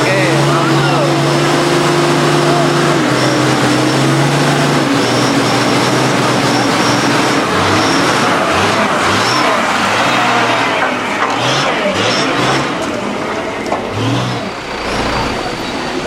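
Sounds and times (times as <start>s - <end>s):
heavy truck engine running: 0.0s - 16.0s.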